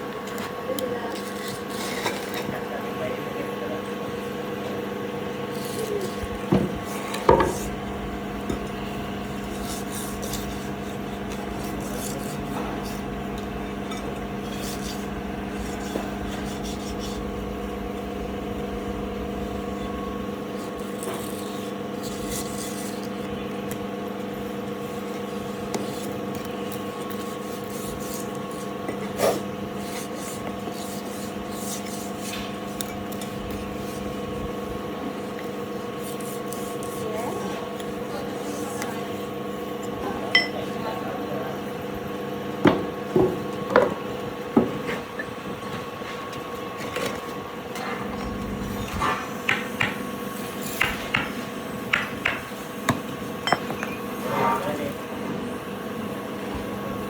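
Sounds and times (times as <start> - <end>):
workshop machinery humming: 0.0 - 57.0
rasping and scraping: 8.8 - 17.8, 19.6 - 23.2, 27.0 - 34.3.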